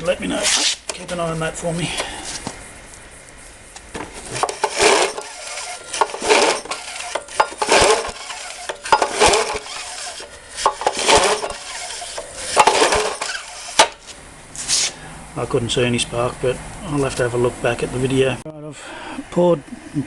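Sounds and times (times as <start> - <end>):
starter rope pulls with engine rasp: 0.0 - 1.1, 4.0 - 15.0.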